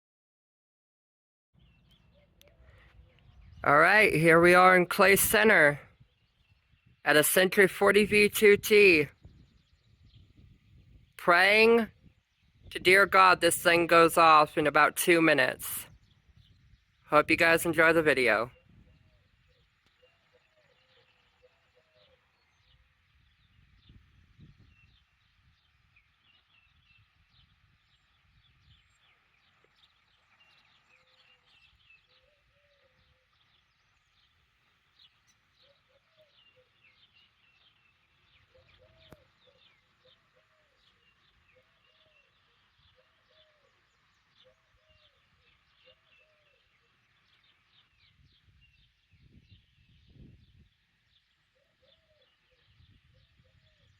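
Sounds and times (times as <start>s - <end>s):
wind rumble on microphone: 1.6s - 3.7s, 5.0s - 7.1s, 8.1s - 13.7s, 15.8s - 17.5s, 18.5s - 19.6s, 22.6s - 29.1s, 48.0s - 50.8s, 52.6s - 53.9s
small birds chirping: 1.6s - 53.9s.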